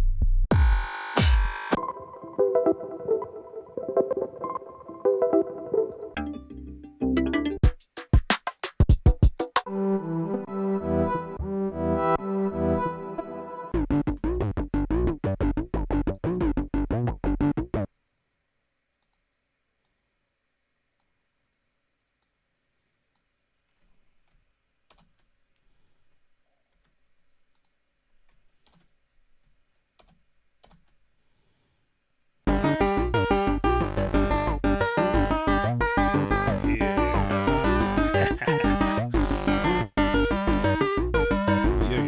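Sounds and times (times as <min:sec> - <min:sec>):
faint scattered clicks: 0:19.0 - 0:20.0, 0:24.2 - 0:25.3, 0:26.7 - 0:28.9, 0:30.0 - 0:31.0
fast pulsing synthesizer music: 0:32.5 - 0:42.0.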